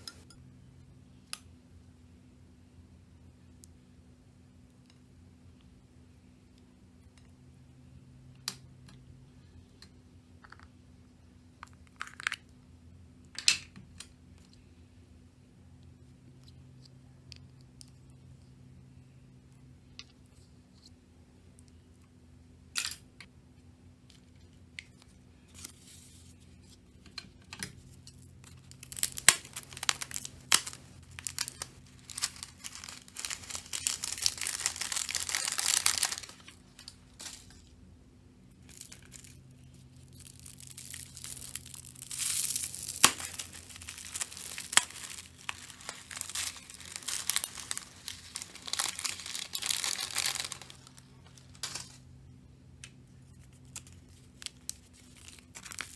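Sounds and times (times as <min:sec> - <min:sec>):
slime crackling and popping: 0:28.4 - 0:37.0, 0:38.6 - 0:51.8.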